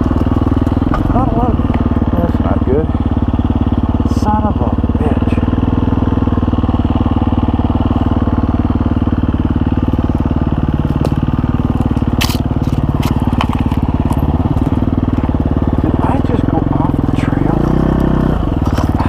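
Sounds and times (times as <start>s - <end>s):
dirt bike engine idling: 0.0s - 19.0s
sharp clicks and knocks: 10.9s - 15.3s.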